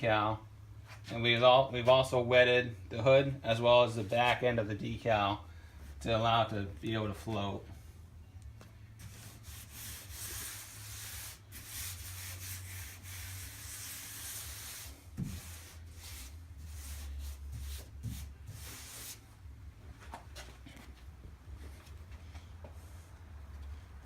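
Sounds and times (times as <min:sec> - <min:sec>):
vinyl decal rubbing on wet hood: 0:09.0 - 0:19.2.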